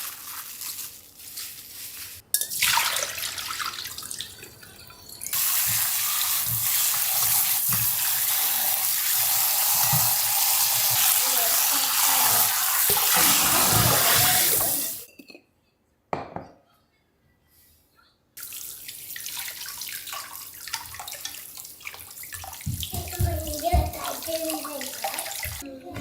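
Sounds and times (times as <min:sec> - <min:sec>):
tap running into a sink: 0:09.8 - 0:11.1.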